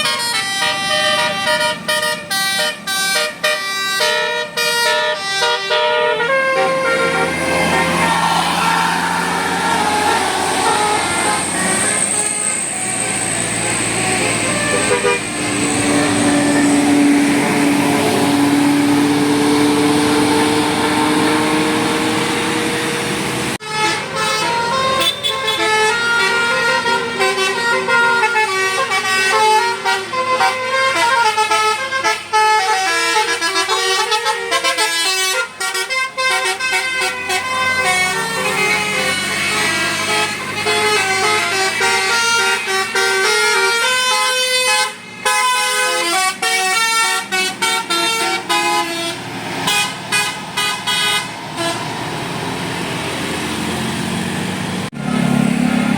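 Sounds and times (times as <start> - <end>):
musical air horn melody: 0.0 - 19.0, 23.6 - 51.9
long held horn tone: 0.0 - 19.5, 23.6 - 52.0
vehicle passing: 6.1 - 24.2, 47.2 - 55.9.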